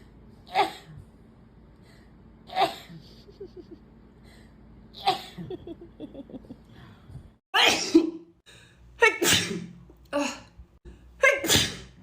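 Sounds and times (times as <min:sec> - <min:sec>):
girl sneezing: 0:07.6 - 0:08.1, 0:09.0 - 0:10.4, 0:11.2 - 0:12.0.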